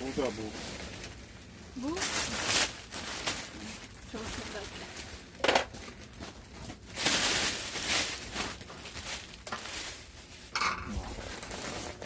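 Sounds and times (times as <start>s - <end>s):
plastic packaging rustling: 0.0s - 12.0s.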